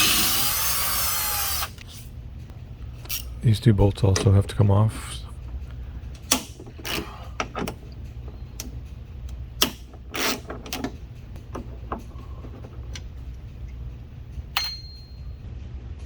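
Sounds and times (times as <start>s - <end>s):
steady low hum: 0.0s - 16.0s
hand tools clicking and knocking: 5.4s - 15.2s
metallic clink with ring: 14.5s - 15.4s.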